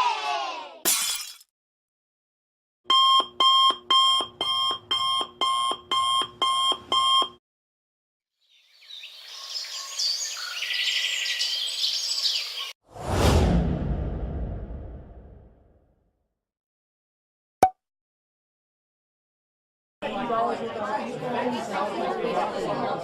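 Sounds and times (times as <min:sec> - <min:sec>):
alarm clock beeping: 0:02.9 - 0:07.3.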